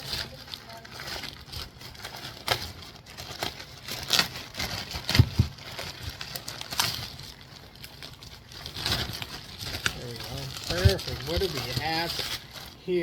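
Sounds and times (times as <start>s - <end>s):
plastic packaging crinkling: 0.0s - 13.0s
dull thumps: 5.0s - 5.8s, 10.6s - 12.0s.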